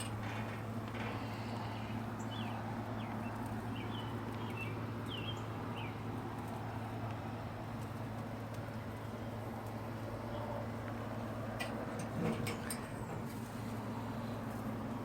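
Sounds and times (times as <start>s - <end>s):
bird chirping: 2.2s - 6.0s.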